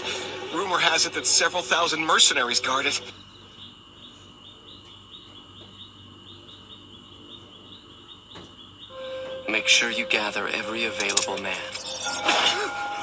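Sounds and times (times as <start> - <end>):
steady high trill: 8.9 - 13.0.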